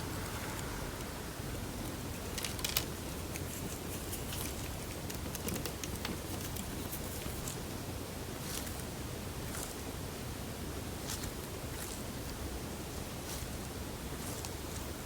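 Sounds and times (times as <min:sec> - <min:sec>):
small crackles and clicks: 0:02.4 - 0:07.6.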